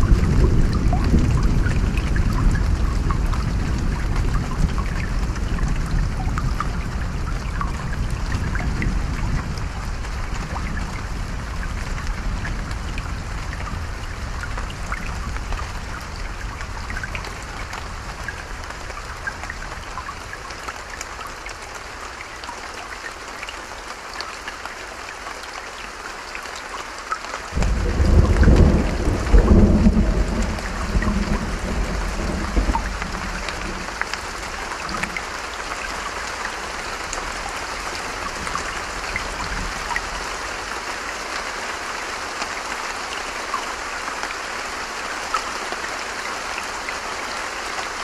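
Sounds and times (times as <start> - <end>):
thunder rumbling: 0.0 - 18.6, 27.6 - 35.2
creek running: 0.0 - 48.0
rain: 0.0 - 48.0.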